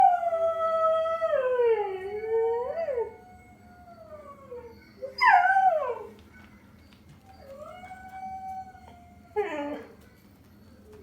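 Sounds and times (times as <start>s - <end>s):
dog howling: 7.4s - 10.0s.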